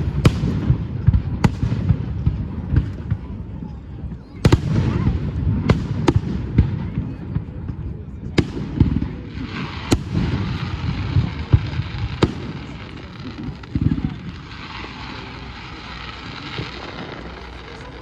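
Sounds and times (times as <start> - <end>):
fireworks hiss: 9.4 - 18.0.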